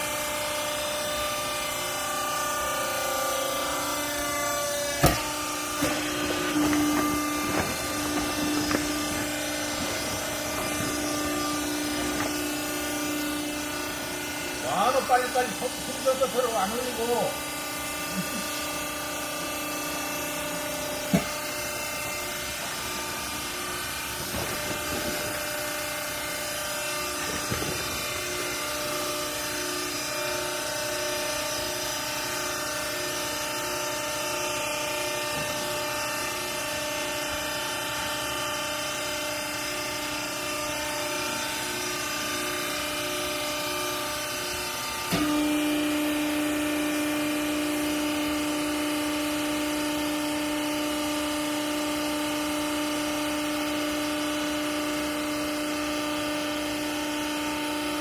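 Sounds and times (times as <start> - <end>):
hydraulic machine whine: 0.0 - 58.0
strong steady hum: 1.2 - 33.6.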